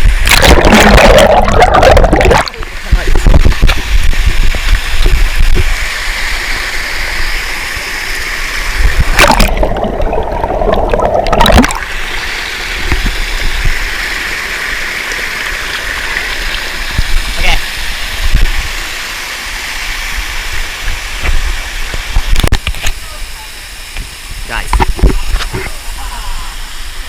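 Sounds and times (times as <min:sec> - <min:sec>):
muffled underwater gurgling: 0:00.0 - 0:05.7, 0:08.9 - 0:11.9
stream water rushing: 0:00.0 - 0:27.0.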